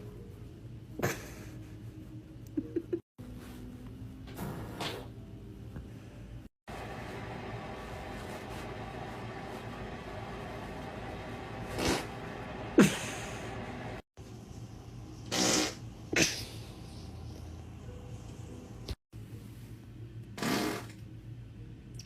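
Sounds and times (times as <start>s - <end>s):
short farts: 20.4s - 21.0s.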